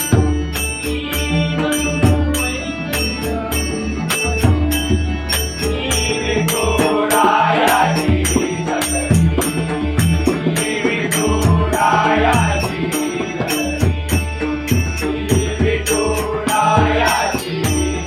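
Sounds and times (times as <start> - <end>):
barrel drum rhythm: 0.0 - 18.0
hand cymbal strikes: 0.0 - 18.0
chant-like singing: 5.6 - 18.0.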